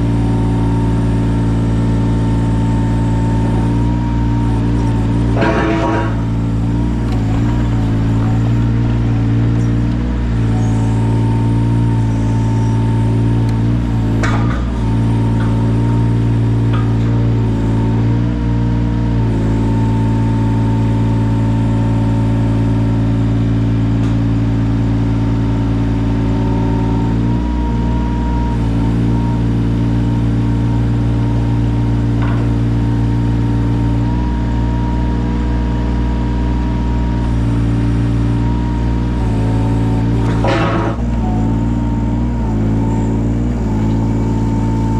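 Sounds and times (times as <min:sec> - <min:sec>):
diesel engine running: 0:00.0 - 0:44.9.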